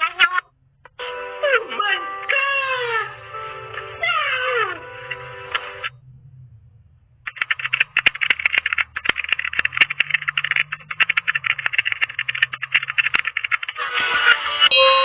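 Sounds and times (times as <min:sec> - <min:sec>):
rattling clatter of clicks: 0:07.2 - 0:14.2.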